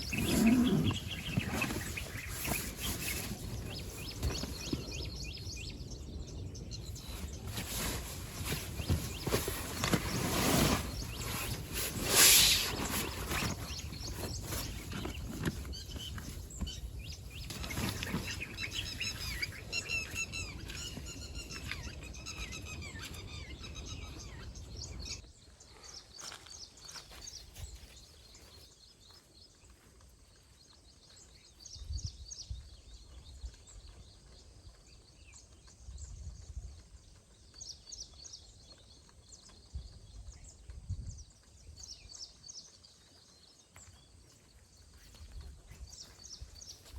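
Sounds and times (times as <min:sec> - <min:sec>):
birds chirping and calling: 0:00.0 - 0:29.8.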